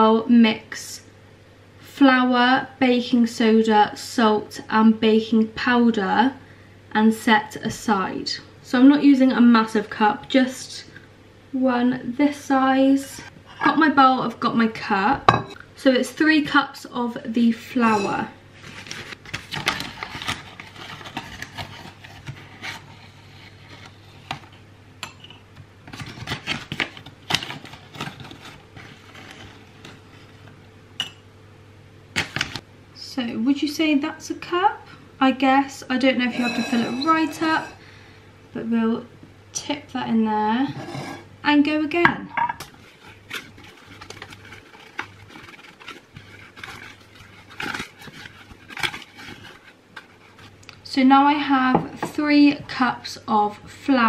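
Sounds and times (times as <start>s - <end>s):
cup scooping flour: 42.7s - 50.6s.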